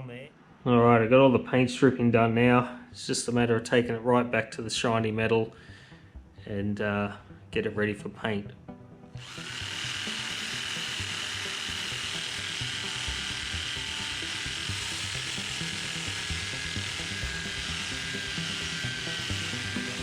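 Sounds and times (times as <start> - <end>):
rotary tool grinding metal: 9.2 - 20.0.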